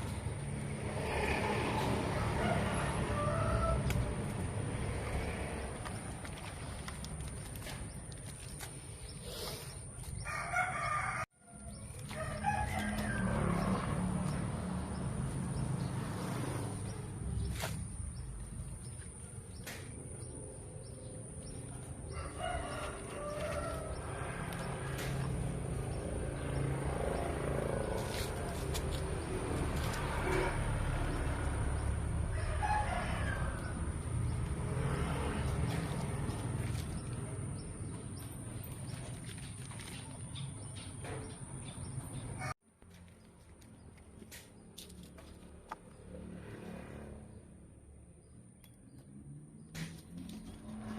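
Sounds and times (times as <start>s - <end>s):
rooster crowing: 2.0s - 4.0s, 10.2s - 14.0s, 22.1s - 24.4s, 32.2s - 34.1s
birds chirping: 3.2s - 45.0s.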